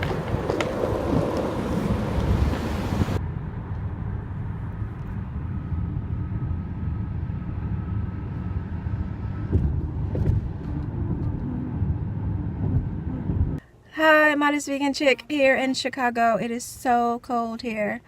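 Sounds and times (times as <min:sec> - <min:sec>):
moving vehicle rumble: 0:00.0 - 0:13.6.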